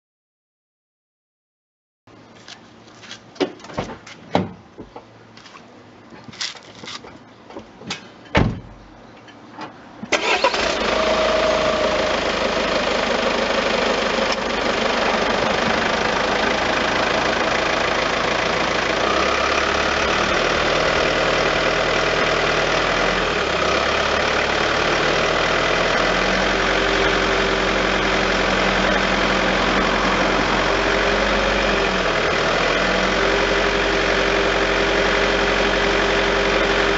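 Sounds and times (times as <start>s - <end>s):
car engine cranking and idling: 8.7s - 36.9s
low steady drone: 25.7s - 36.9s.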